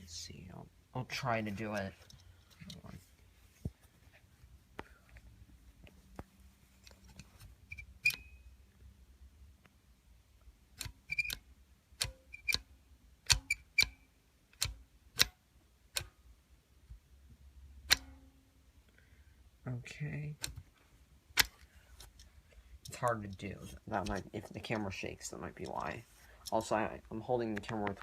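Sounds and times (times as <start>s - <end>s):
metal button clicks: 17.9s - 18.2s.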